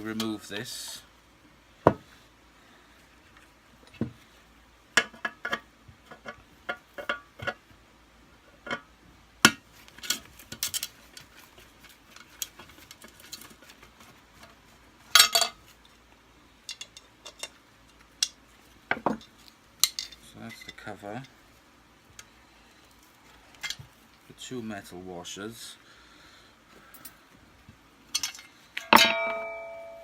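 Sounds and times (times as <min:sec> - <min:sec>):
metal parts clicking and clinking: 0:09.8 - 0:13.8, 0:15.1 - 0:15.6, 0:16.6 - 0:18.4, 0:19.1 - 0:21.3, 0:26.8 - 0:27.2, 0:28.1 - 0:30.0.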